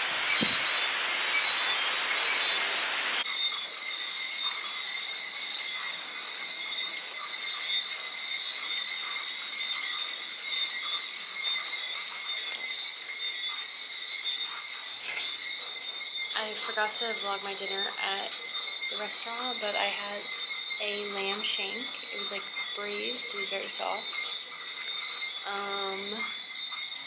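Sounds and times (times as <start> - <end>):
heavy rain pouring: 0.0 - 3.2, 16.3 - 26.4
frogs whistling: 0.0 - 27.0.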